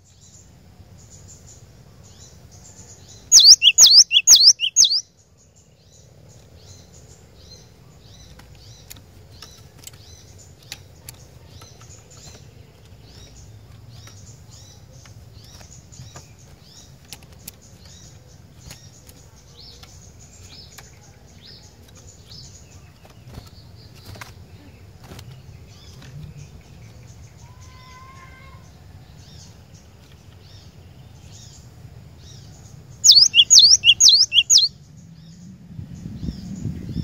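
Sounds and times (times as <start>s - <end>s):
bird sharp ticks: 3.4s - 5.0s, 33.1s - 34.7s
tit calling high notes: 3.4s - 5.0s, 33.1s - 34.7s.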